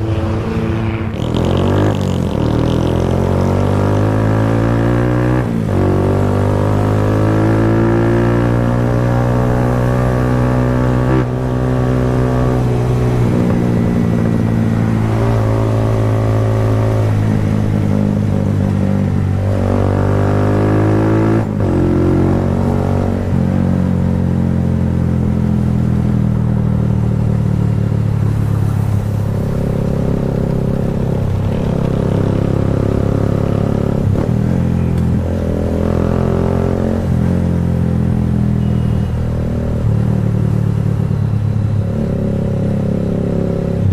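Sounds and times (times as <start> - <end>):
motorcycle engine revving: 0.0 - 43.9.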